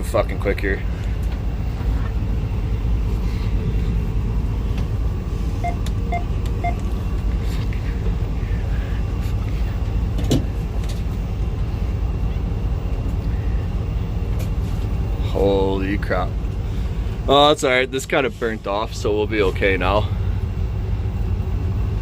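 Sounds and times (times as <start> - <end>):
locomotive engine rumbling: 0.0 - 22.0
short beeps: 5.6 - 6.8.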